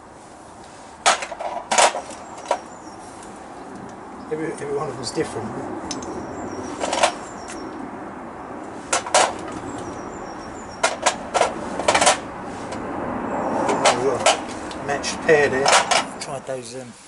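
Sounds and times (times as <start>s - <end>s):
brake pads clacking together: 1.0s - 2.8s, 6.8s - 7.6s, 8.9s - 10.0s, 10.7s - 12.8s, 13.6s - 14.8s, 15.4s - 16.2s.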